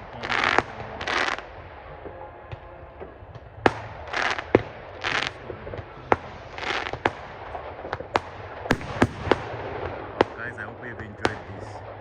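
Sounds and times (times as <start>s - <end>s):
fireworks hissing bursts: 0.0s - 1.5s, 3.7s - 10.6s
fireworks bangs: 0.0s - 12.0s.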